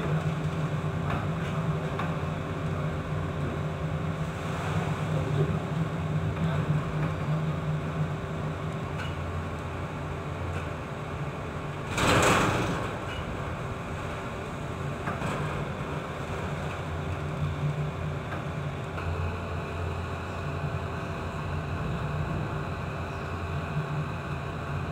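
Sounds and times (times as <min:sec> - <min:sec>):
ship engines humming: 0:12.8 - 0:24.9.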